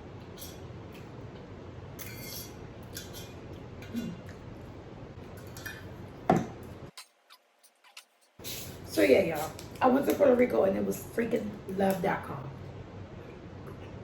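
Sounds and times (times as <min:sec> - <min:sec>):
chewing and mouth sounds: 0:07.0 - 0:08.6.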